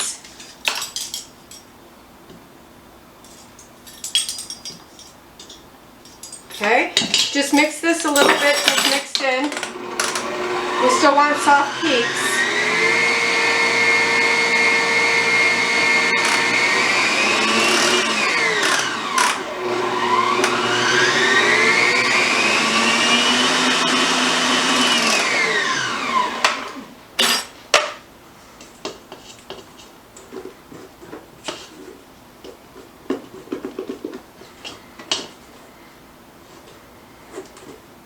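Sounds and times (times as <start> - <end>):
electric mixer whining: 9.4 - 26.9.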